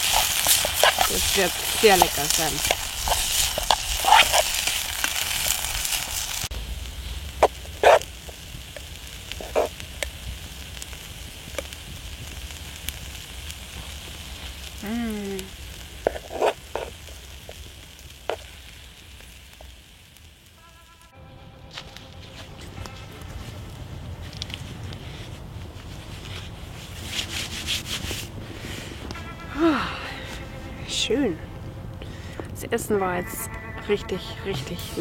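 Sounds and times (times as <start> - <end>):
food sizzling in a pan: 0.0 - 21.1.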